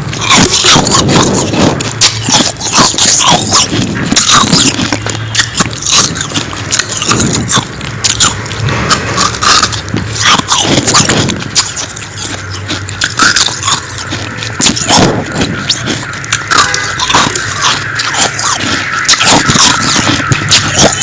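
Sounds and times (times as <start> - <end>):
crunching frost: 0.0 - 21.0.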